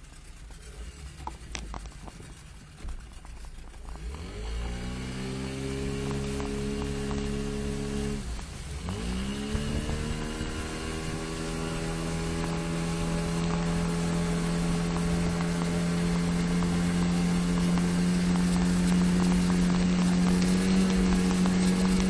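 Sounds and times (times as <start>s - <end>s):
outboard motor running: 0.0s - 22.0s.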